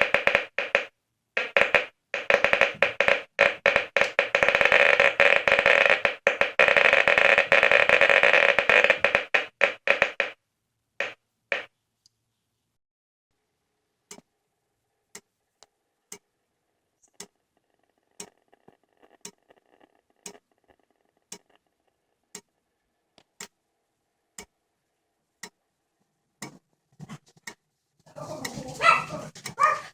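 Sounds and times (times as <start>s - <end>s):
geiger counter ticking: 0.0s - 10.4s, 17.0s - 23.6s, 24.3s - 24.6s, 25.4s - 25.6s
dog barking: 28.1s - 29.9s.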